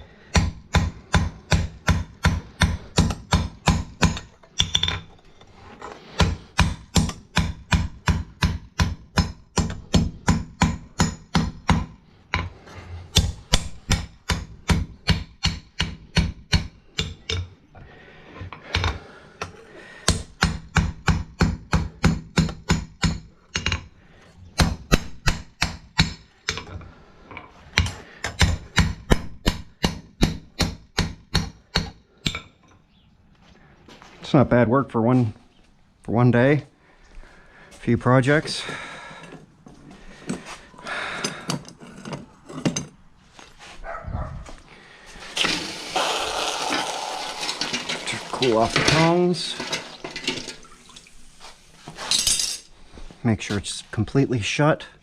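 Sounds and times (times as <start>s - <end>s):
hammer striking steel on anvil: 0.3s - 5.0s, 6.2s - 12.5s, 13.1s - 17.5s.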